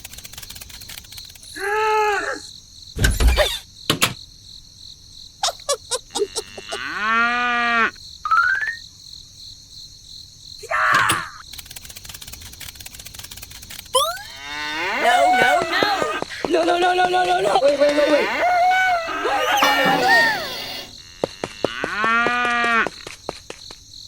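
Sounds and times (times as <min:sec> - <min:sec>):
quick run of clicks: 0:00.0 - 0:01.5, 0:11.4 - 0:14.0
crickets chirping: 0:00.0 - 0:24.0
cows mooing: 0:06.2 - 0:07.9, 0:14.2 - 0:16.3, 0:17.2 - 0:22.9.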